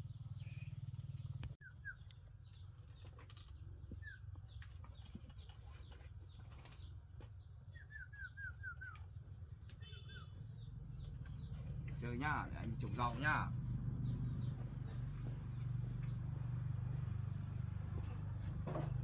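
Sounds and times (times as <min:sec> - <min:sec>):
steady low hum: 0:00.0 - 0:01.6
small birds chirping: 0:00.0 - 0:19.0.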